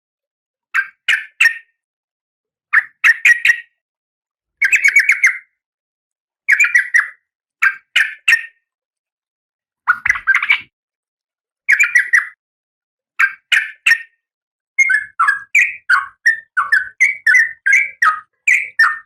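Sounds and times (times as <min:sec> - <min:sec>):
bird harsh chattering calls: 0:09.9 - 0:10.7.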